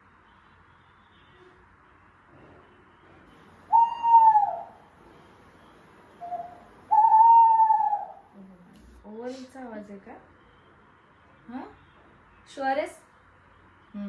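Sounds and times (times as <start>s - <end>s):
owl hooting through speaker: 3.7s - 4.9s, 6.2s - 8.4s.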